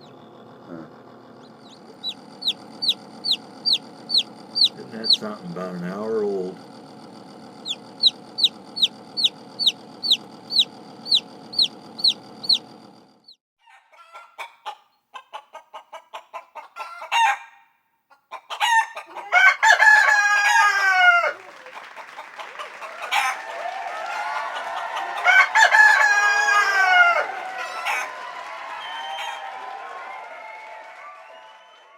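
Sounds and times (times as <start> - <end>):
chick peeping: 0.0 - 6.3, 7.6 - 17.4, 18.3 - 23.5, 24.1 - 28.1
chicken clucking: 0.0 - 6.3, 7.6 - 12.8, 13.6 - 28.2
rooster crowing: 1.6 - 5.2, 7.6 - 12.6, 13.6 - 14.7, 16.6 - 17.7, 18.4 - 31.9.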